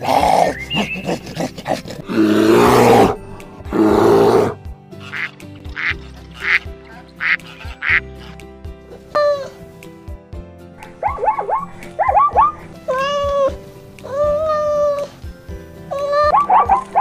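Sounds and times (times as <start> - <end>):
background music: 0.0 - 17.0
duck quacking: 5.0 - 8.4.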